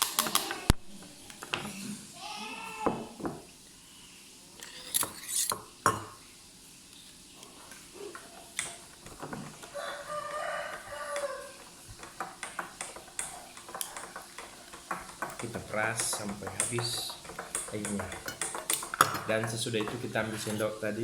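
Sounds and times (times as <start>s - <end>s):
rooster crowing: 9.6s - 11.7s.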